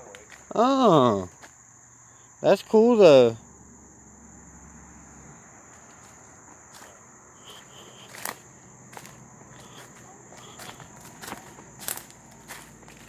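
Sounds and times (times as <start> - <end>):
insects chorus: 0.0 - 13.0
footsteps crunching on leaf litter: 5.7 - 13.0.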